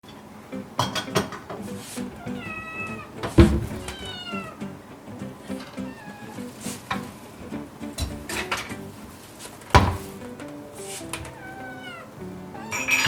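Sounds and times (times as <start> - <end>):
kitten meowing: 2.2 - 3.1, 3.8 - 4.6, 5.8 - 6.5, 11.2 - 13.0
loud thump: 3.2 - 3.9, 9.8 - 10.1.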